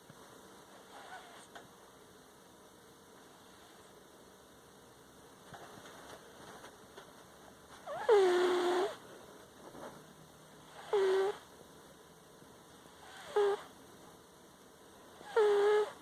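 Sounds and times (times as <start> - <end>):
cat snoring with squeaks: 0.7 - 1.6, 3.4 - 4.0, 7.8 - 9.0, 10.6 - 11.5, 12.9 - 13.7, 15.2 - 16.0.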